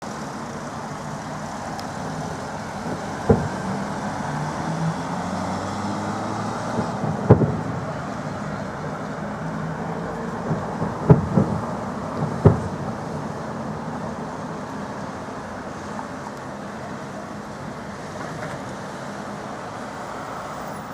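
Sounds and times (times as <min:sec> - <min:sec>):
steady background noise: 0:00.0 - 0:20.9
fireworks bangs: 0:01.5 - 0:13.5.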